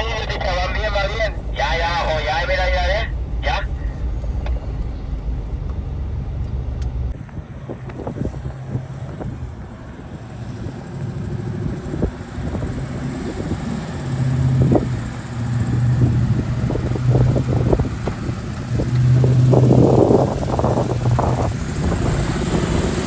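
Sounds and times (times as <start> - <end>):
engine running low: 0.0 - 23.0
wind on microphone: 7.1 - 9.7, 14.5 - 23.0.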